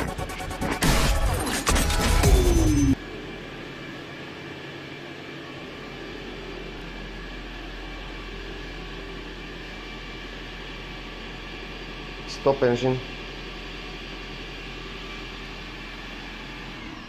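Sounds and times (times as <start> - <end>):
electronic music with heavy beat: 0.0 - 3.0.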